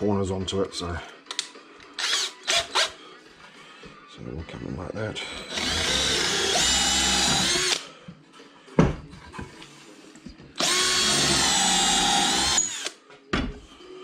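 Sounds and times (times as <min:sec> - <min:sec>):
power drill running: 0:02.0 - 0:02.9, 0:05.4 - 0:07.8, 0:10.6 - 0:13.0.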